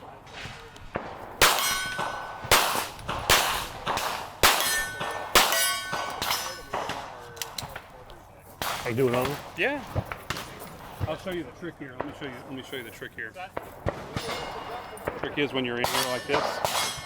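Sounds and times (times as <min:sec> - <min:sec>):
gunshots: 0:00.0 - 0:07.9, 0:08.6 - 0:11.3, 0:13.6 - 0:17.0
bullet clanging on steel plate: 0:01.4 - 0:07.7, 0:15.8 - 0:17.0.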